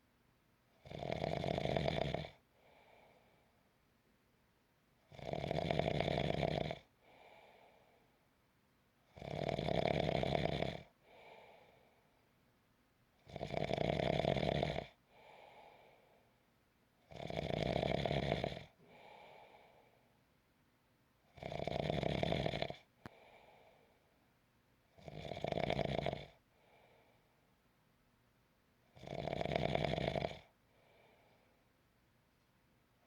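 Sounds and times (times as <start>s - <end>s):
person snoring: 0.8s - 2.4s, 5.1s - 6.9s, 9.2s - 11.2s, 13.3s - 14.9s, 17.1s - 19.4s, 21.4s - 22.8s, 25.0s - 26.4s, 29.0s - 30.5s
quiet short breath: 2.5s - 3.7s, 11.0s - 12.4s, 15.1s - 16.4s, 18.8s - 20.2s, 23.0s - 24.2s, 26.5s - 27.6s, 30.6s - 31.8s.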